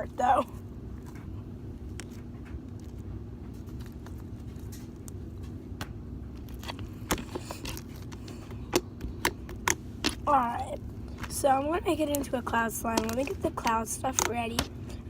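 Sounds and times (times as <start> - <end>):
steady low hum: 0.0 - 15.0
small clicks and taps: 13.0 - 14.8.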